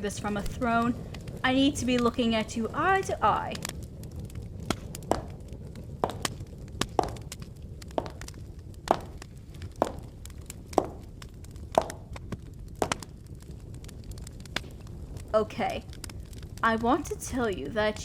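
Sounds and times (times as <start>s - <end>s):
low background rumble: 0.0s - 18.0s
footsteps: 6.0s - 7.4s, 8.0s - 11.1s, 11.7s - 12.1s, 12.8s - 13.1s.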